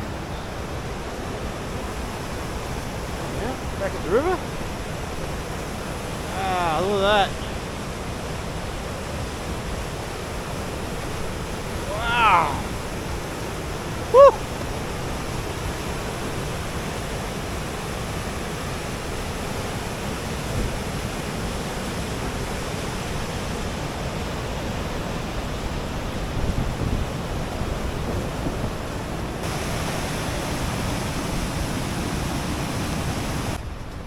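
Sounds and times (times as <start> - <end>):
waterfall rushing: 0.0 - 25.0, 29.0 - 33.6.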